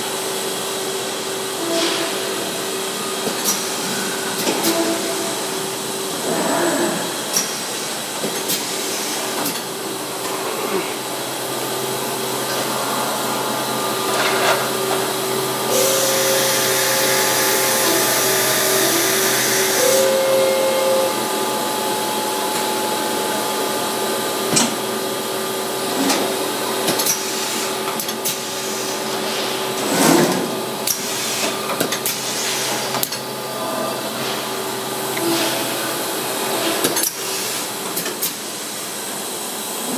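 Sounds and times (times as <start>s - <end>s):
machining center mechanical whine: 0.0s - 39.9s
short high tones: 15.7s - 23.2s.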